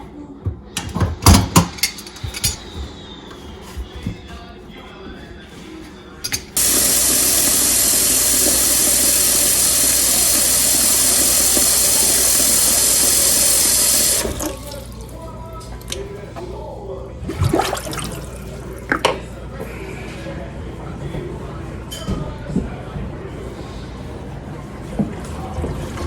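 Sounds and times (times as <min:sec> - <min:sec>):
water running into sink: 0:06.6 - 0:15.2, 0:17.3 - 0:19.0.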